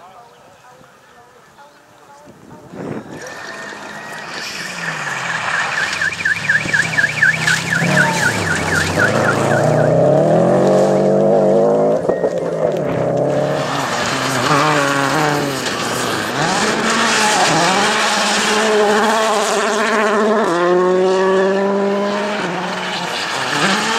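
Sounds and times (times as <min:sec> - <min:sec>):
high warbling tone: 0:03.0 - 0:15.0
rally car engine accelerating: 0:03.1 - 0:23.9.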